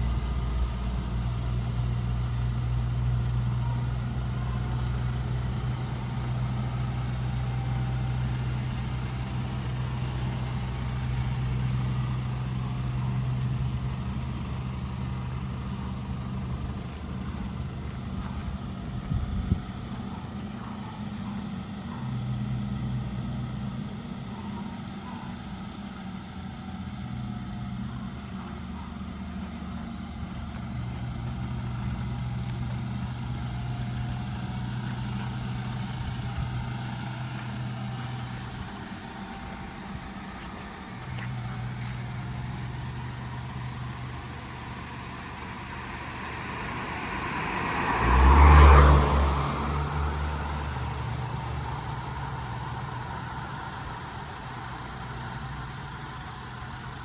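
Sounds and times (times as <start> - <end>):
engine running with low hum: 0.0 - 57.0
vehicle passing by: 30.8 - 53.8.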